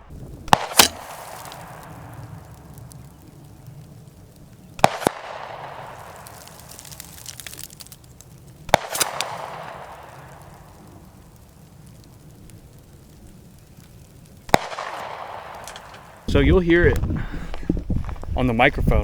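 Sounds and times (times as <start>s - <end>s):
pistol gunshots with rolling echo: 0.0s - 2.3s, 4.8s - 6.2s, 8.7s - 10.7s, 14.5s - 16.3s.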